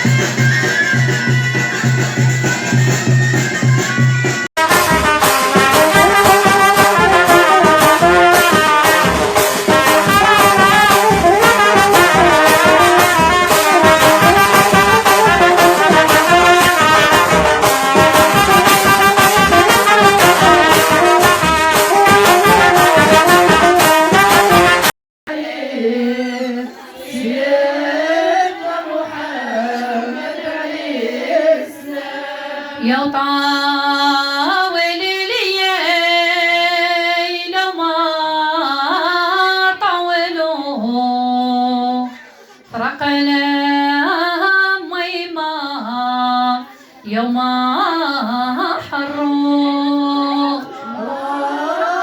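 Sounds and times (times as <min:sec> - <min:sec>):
fast steady drumming: 0:00.0 - 0:24.9
wind instruments playing a melody: 0:00.0 - 0:24.9
woman singing alone: 0:32.8 - 0:42.2, 0:42.8 - 0:52.0.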